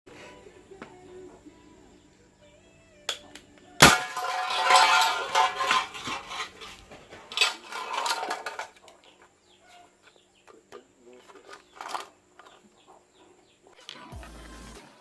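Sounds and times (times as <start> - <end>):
clattering and rattling: 3.9 - 9.0, 11.2 - 12.6.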